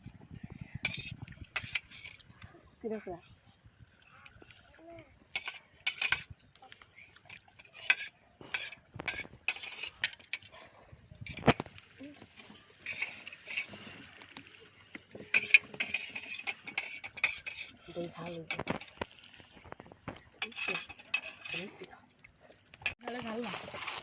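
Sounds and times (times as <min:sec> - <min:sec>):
metal spoon scraping cookware: 0:00.8 - 0:02.2, 0:05.3 - 0:06.3, 0:07.6 - 0:10.5, 0:12.4 - 0:14.1, 0:15.1 - 0:19.0, 0:20.4 - 0:21.9.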